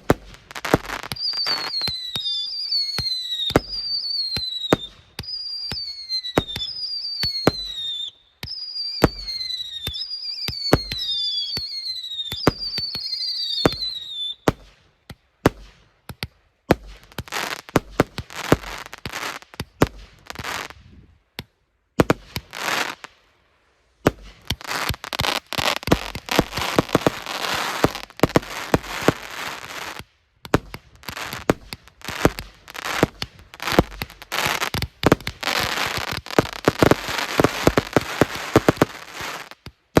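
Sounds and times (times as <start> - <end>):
firework crackling: 0.0 - 14.7, 16.7 - 20.8, 22.0 - 23.2, 24.1 - 40.0
fireworks firing: 0.0 - 20.9, 22.0 - 23.2, 24.0 - 40.0
falling firework whistle: 0.7 - 14.5, 24.6 - 30.0, 31.1 - 40.0.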